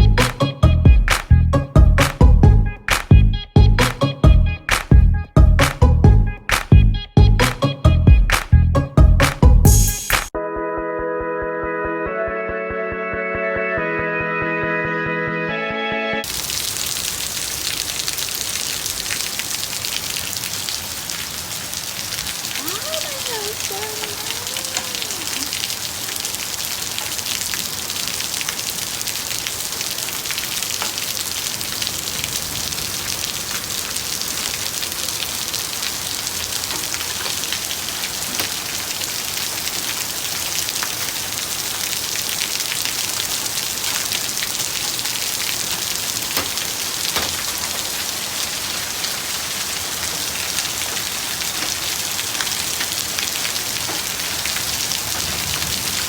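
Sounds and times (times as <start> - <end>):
heavy rain and hail: 16.2 - 56.0.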